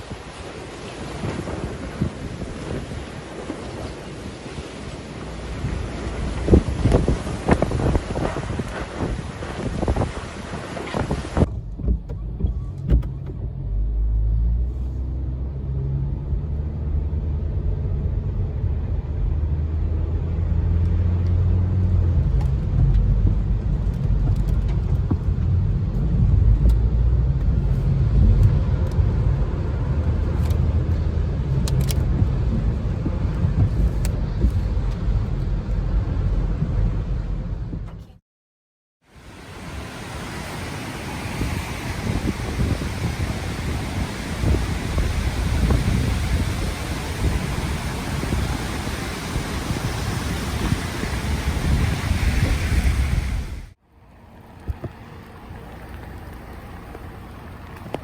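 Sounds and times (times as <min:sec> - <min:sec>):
car engine rumbling: 0:10.7 - 0:38.2, 0:39.2 - 0:58.0.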